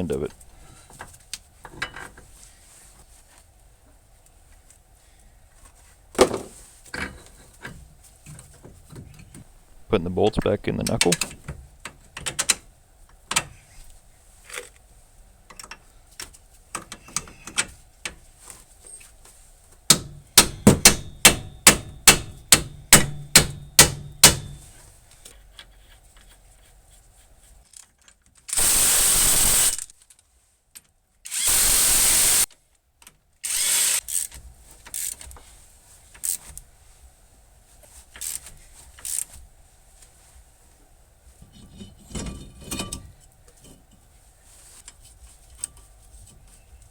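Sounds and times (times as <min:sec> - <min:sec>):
power tool bursts: 0:28.6 - 0:29.9, 0:31.3 - 0:32.5, 0:33.5 - 0:34.0
ratchet clicks: 0:33.4 - 0:35.2.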